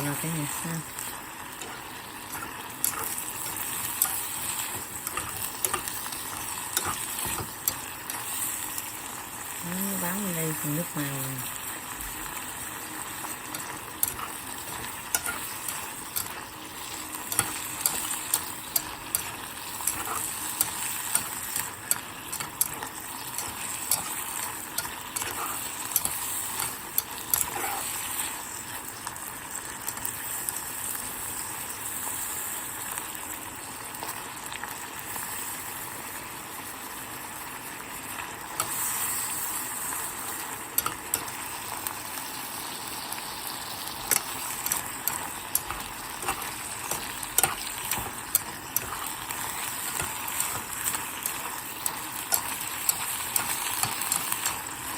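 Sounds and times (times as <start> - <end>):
food sizzling in a pot: 0.0 - 54.9
spoon scraping a pot: 1.6 - 8.2, 13.4 - 28.1, 44.0 - 54.6.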